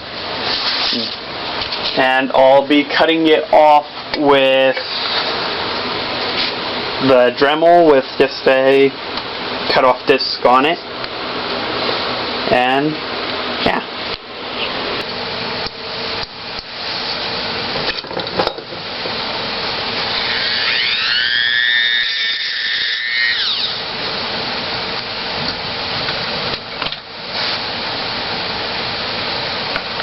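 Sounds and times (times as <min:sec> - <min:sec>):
whining tone: 0:19.8 - 0:24.2
rotary tool grinding steel: 0:20.0 - 0:23.8.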